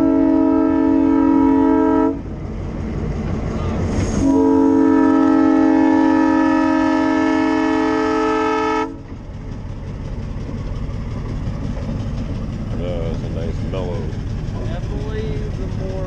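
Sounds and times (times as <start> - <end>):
locomotive air horn blast: 0.0 - 2.3, 4.1 - 9.0.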